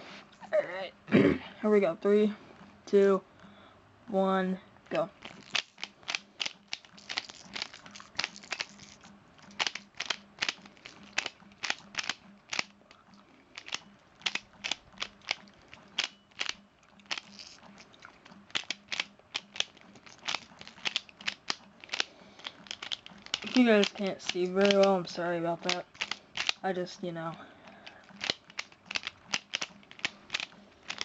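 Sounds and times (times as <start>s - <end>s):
plastic puzzle clicking: 5.2s - 12.7s, 13.5s - 17.6s, 18.5s - 26.6s, 27.8s - 31.0s.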